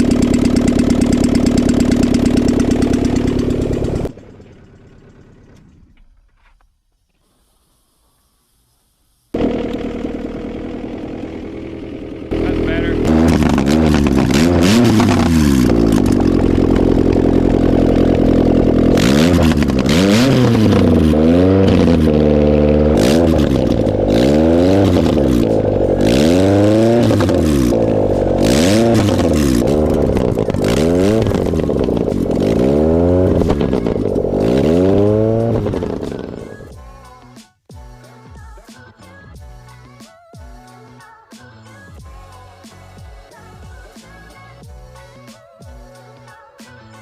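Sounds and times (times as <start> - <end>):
car engine idling and revving: 0.0 - 6.6, 9.3 - 37.2.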